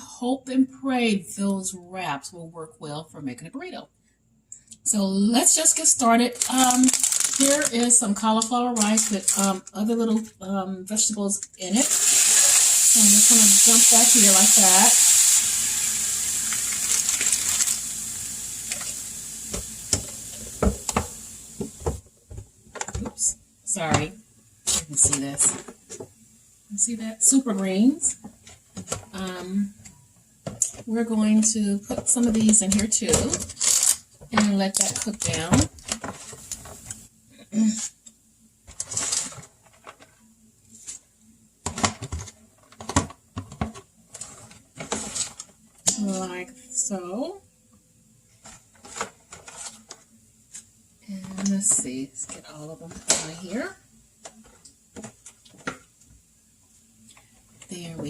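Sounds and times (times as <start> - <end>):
vegetables sizzling in a hot pan: 6.3 - 9.6, 11.6 - 21.9.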